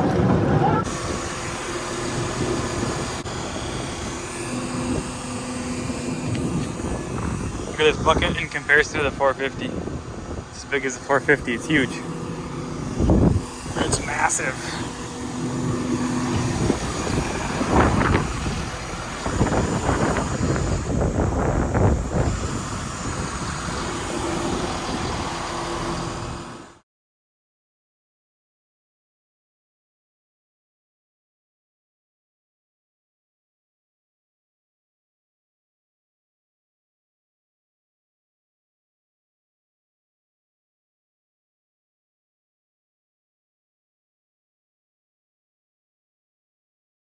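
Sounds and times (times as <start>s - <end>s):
faint whine: 0.0s - 26.7s
excavator engine and hydraulics: 0.0s - 26.8s.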